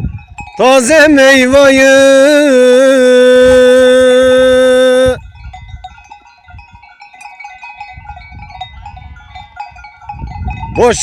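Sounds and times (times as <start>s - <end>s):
man singing long note: 0.6s - 5.2s.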